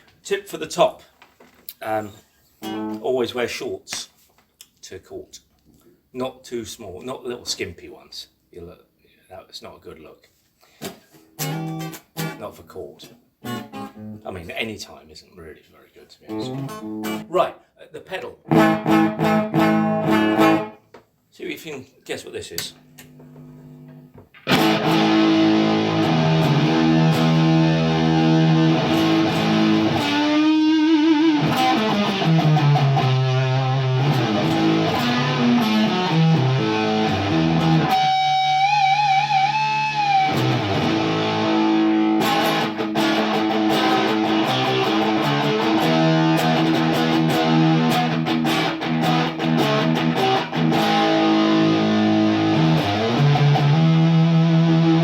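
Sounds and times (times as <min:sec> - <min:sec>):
fuzzed electric guitar: 0:11.4 - 0:12.4, 0:18.5 - 0:20.8, 0:22.7 - 0:55.0.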